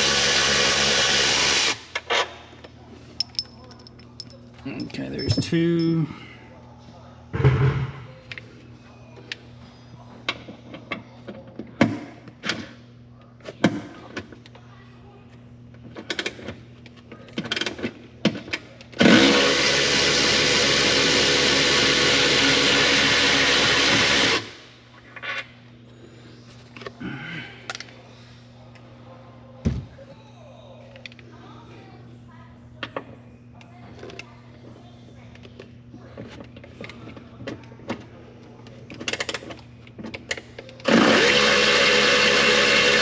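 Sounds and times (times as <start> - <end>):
hand tools clinking on metal: 3.2 - 6.3
power tool running: 19.0 - 24.6, 40.9 - 43.0.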